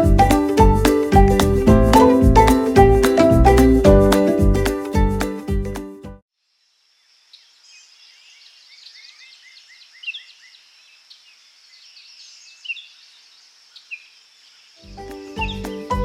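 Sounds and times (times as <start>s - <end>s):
birds chirping: 7.0s - 16.0s.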